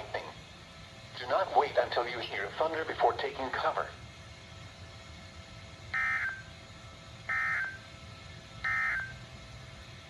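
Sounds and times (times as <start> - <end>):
digital data tone squawk: 6.0 - 6.4, 7.3 - 7.8, 8.6 - 9.2.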